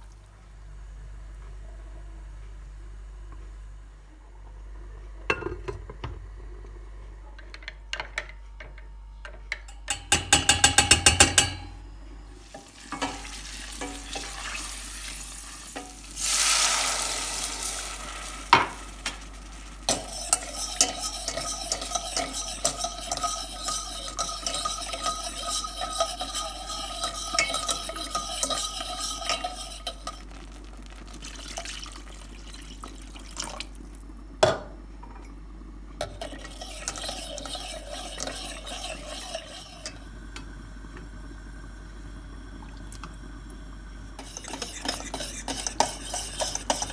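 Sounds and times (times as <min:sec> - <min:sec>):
utensil clinking against dish: 0:09.6 - 0:11.8, 0:12.4 - 0:14.6, 0:19.9 - 0:30.4, 0:36.0 - 0:40.0, 0:44.2 - 0:46.9
spoon stirring and scraping: 0:09.7 - 0:11.8, 0:12.4 - 0:33.7, 0:36.0 - 0:40.1, 0:44.2 - 0:46.9
food sizzling in a pan: 0:12.3 - 0:34.3, 0:36.0 - 0:46.9.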